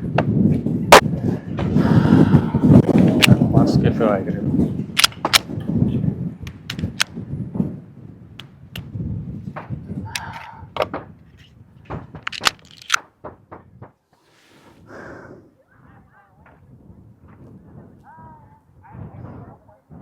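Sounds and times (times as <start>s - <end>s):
wind buffeting microphone: 0.0s - 14.0s, 14.8s - 20.0s
sharp clicks and knocks: 6.5s - 7.1s, 11.9s - 14.0s.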